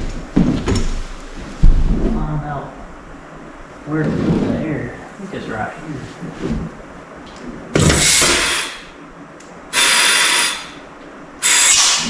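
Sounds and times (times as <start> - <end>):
compressed air hissing: 7.8 - 9.0, 9.7 - 12.0.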